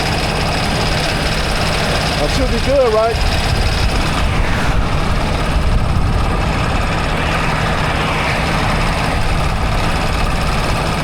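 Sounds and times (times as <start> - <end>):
diesel truck engine idling: 0.0 - 4.2.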